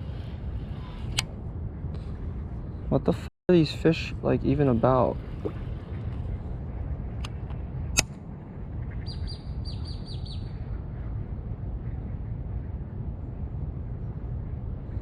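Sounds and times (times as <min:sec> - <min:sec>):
low rumble: 0:00.0 - 0:15.0
small bird chirping: 0:08.9 - 0:10.6.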